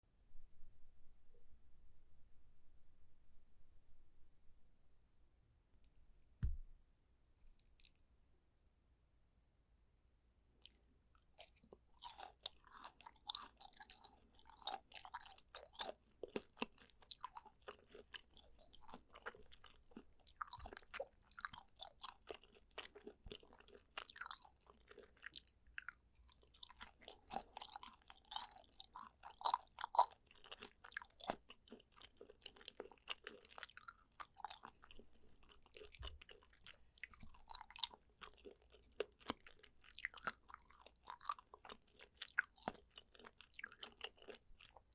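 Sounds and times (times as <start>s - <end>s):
person chewing sticky food: 10.6s - 44.9s.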